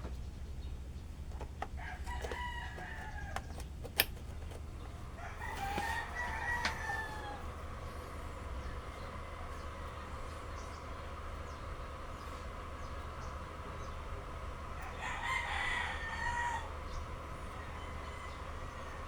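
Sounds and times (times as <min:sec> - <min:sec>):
steady low hum: 0:00.0 - 0:19.0
rooster crowing: 0:01.7 - 0:03.6, 0:05.0 - 0:08.4, 0:14.7 - 0:19.0.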